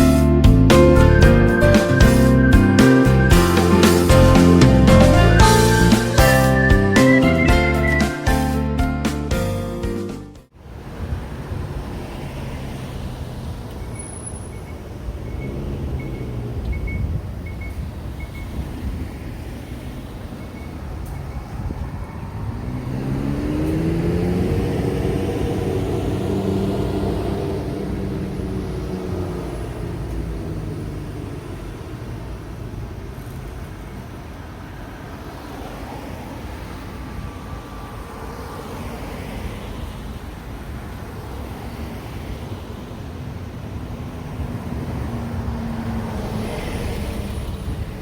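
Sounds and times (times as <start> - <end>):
vehicle engine passing: 0.0 - 8.6, 10.8 - 33.2, 41.2 - 48.0
traffic rumble: 0.0 - 9.7, 10.5 - 48.0.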